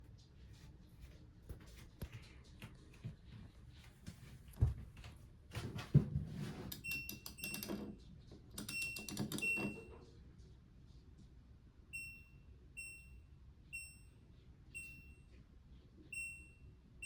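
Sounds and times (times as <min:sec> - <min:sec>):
washing machine beeps: 0:06.8 - 0:08.0, 0:08.6 - 0:10.1, 0:11.9 - 0:15.4, 0:16.0 - 0:17.0.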